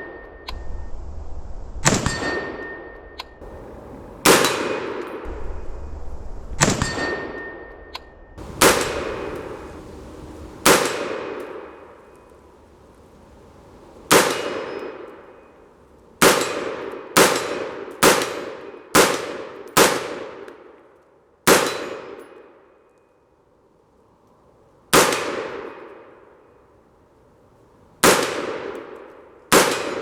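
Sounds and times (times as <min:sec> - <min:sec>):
rifle shots: 0:03.4 - 0:05.4, 0:08.4 - 0:20.4, 0:28.0 - 0:30.0
metallic ring of steel target: 0:06.6 - 0:07.7.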